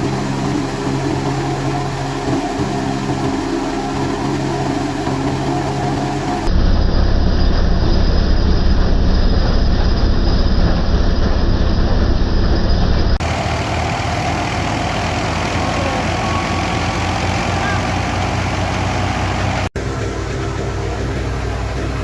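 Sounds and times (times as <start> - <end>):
harvesting machinery drone: 0.0 - 7.9, 13.1 - 22.0.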